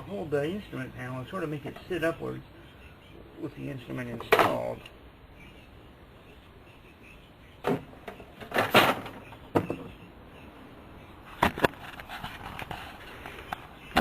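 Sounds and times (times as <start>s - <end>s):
parts knocking and clunking: 7.6s - 10.0s, 13.5s - 14.0s.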